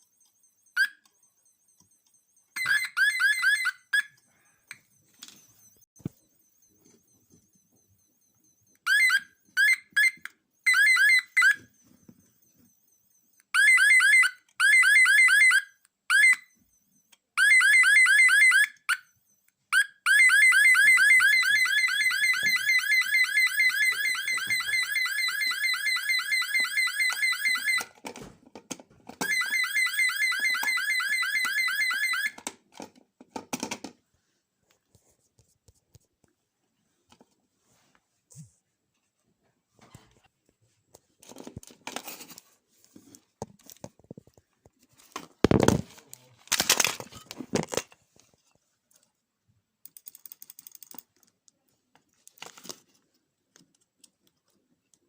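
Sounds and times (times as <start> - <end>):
fire alarm pulsing tone: 0.0 - 27.9, 29.2 - 32.4.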